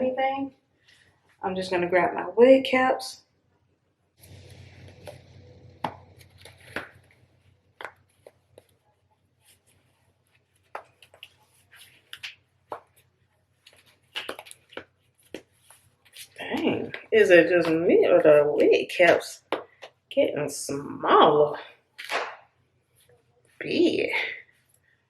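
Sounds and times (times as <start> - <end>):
faint low hum: 4.2 - 10.7
hands handling wig caps: 6.2 - 17.7.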